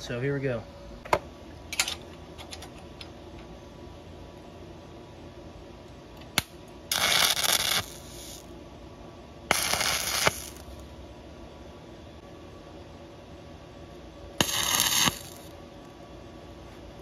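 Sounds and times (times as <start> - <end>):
welding arc crackling: 6.3 - 8.5, 9.5 - 10.9, 14.4 - 15.6.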